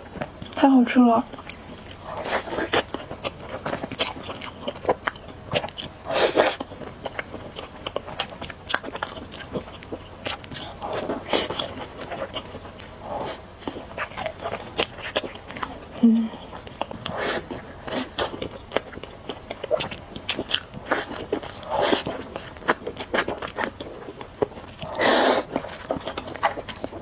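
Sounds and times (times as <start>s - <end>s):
wet chewing and biting: 1.2s - 27.0s
slurping noodles: 2.0s - 3.0s, 6.0s - 6.6s, 12.9s - 15.2s, 17.0s - 18.4s, 20.8s - 24.0s, 24.8s - 26.6s.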